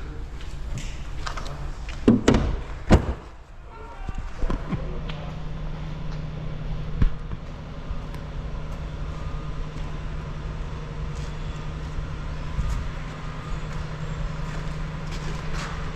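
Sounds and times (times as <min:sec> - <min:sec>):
vehicle engine running: 0:04.3 - 0:15.9.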